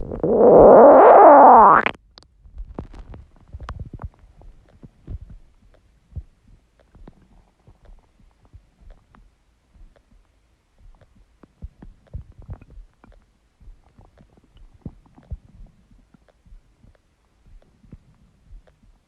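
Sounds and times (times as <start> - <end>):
stomach growling: 0.0 - 2.0
synthesized sweep: 0.0 - 2.0.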